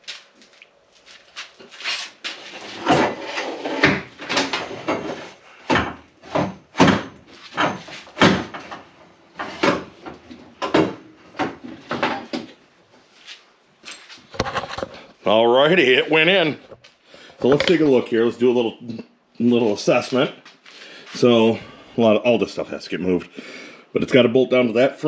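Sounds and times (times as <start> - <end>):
tube scraping bodywork: 1.6 - 5.5.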